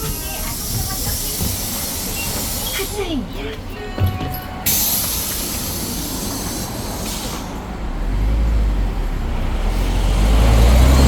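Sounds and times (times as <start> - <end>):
air brake hiss: 0.0 - 3.3, 4.6 - 7.7
bus engine accelerating: 0.0 - 11.0.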